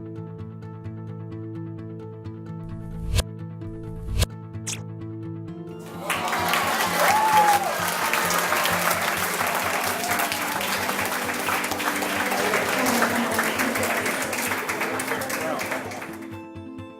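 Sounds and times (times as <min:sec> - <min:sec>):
background music: 0:00.0 - 0:16.9
audience applause: 0:05.8 - 0:16.5.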